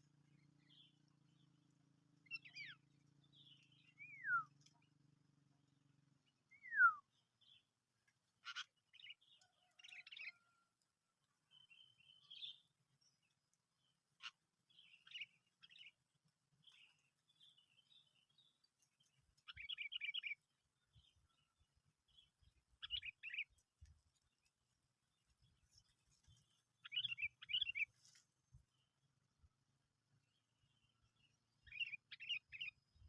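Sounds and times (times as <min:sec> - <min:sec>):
bird chirps: 0:02.2 - 0:05.0, 0:06.2 - 0:07.7, 0:08.4 - 0:10.6, 0:11.5 - 0:16.0, 0:16.6 - 0:23.6, 0:25.4 - 0:28.2, 0:30.2 - 0:33.0
songbird whistled notes: 0:03.9 - 0:04.6, 0:06.5 - 0:07.1.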